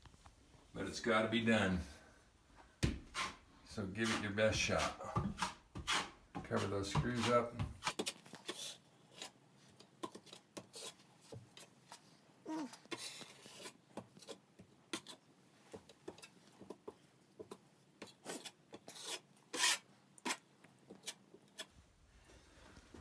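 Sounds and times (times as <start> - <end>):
drywall knife scraping compound: 3.1 - 15.2, 17.5 - 21.8.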